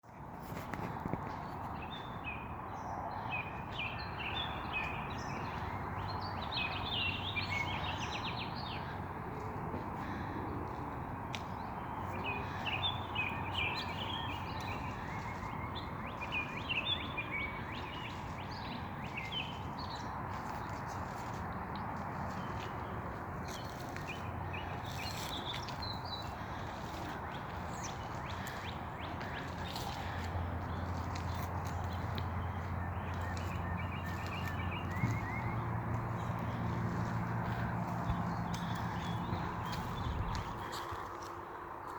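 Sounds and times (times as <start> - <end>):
songbirds chirping and trilling: 0.1 - 41.9
steady background noise: 0.1 - 41.9.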